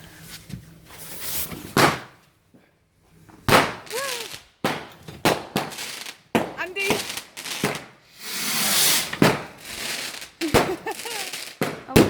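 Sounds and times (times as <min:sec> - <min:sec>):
firework crackling: 0:01.6 - 0:02.2, 0:03.4 - 0:12.0
firework bangs: 0:01.7 - 0:02.2, 0:03.4 - 0:12.0
firework hiss: 0:03.4 - 0:12.0.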